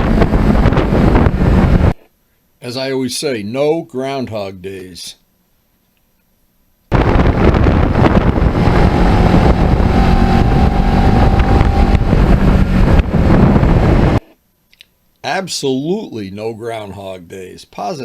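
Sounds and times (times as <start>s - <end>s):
motorcycle engine running: 0.0s - 2.0s, 7.0s - 14.2s
wind rush on microphone: 0.0s - 2.0s, 6.9s - 14.2s.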